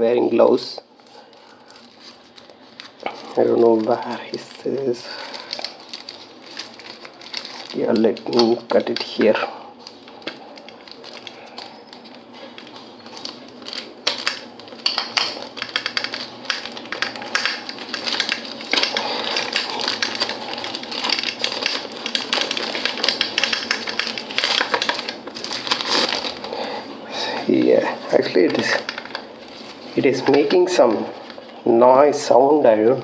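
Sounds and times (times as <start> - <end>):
packaging rustling and crinkling: 0.9 - 33.0.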